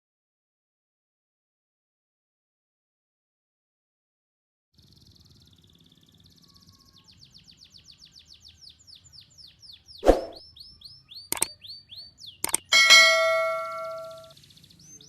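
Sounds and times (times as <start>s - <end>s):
canary singing: 4.9s - 15.0s.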